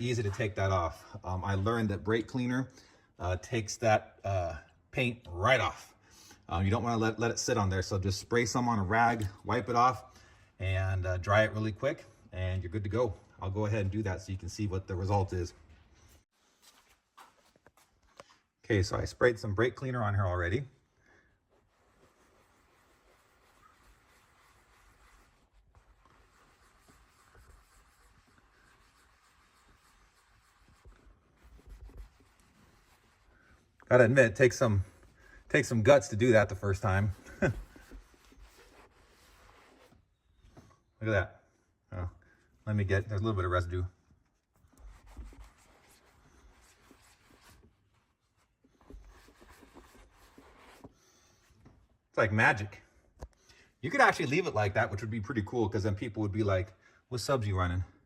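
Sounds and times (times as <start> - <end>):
rag rubbing: 21.6 - 40.1.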